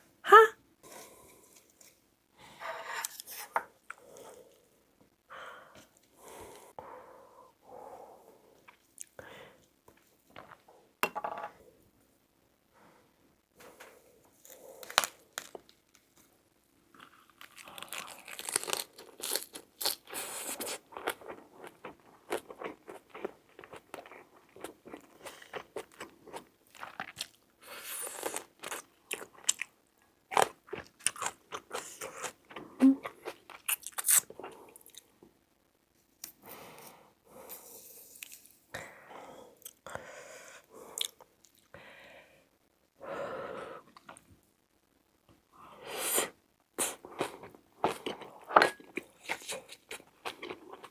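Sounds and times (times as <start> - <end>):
person crunching and chewing food: 14.3 - 16.0, 17.0 - 35.1, 46.8 - 50.9.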